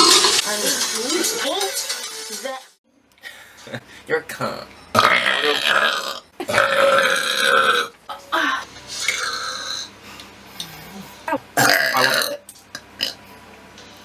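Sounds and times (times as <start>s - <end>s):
woman belching: 5.0s - 9.9s, 11.3s - 12.4s.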